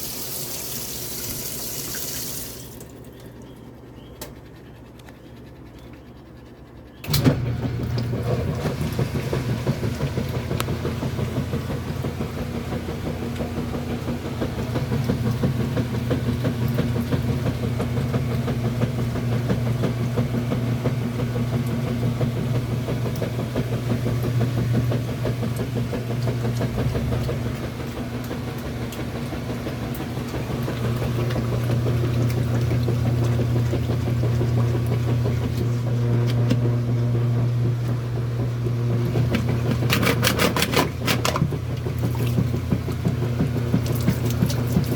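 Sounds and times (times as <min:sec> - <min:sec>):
washing machine motor hum: 0:00.0 - 0:44.9.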